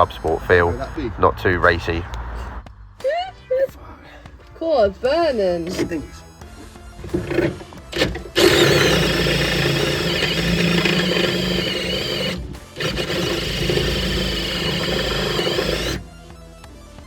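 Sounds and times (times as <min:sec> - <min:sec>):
cordless drill boring through metal: 0:06.6 - 0:16.1.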